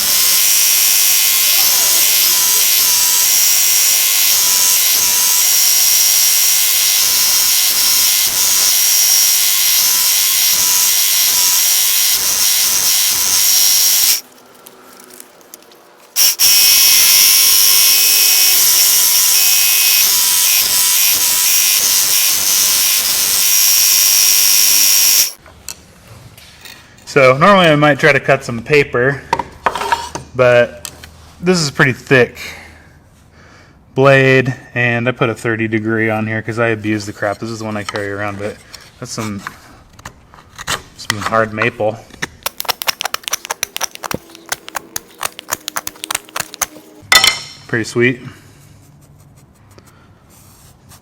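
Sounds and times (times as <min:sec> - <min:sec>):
belt sharpener whirring: 0:00.0 - 0:14.2, 0:16.2 - 0:25.4, 0:42.5 - 0:47.0.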